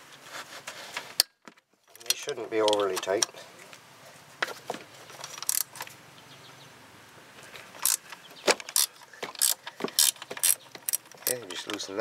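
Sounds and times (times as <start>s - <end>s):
ratcheting wrench clicking: 5.3s - 5.8s, 7.8s - 8.1s, 8.7s - 11.6s.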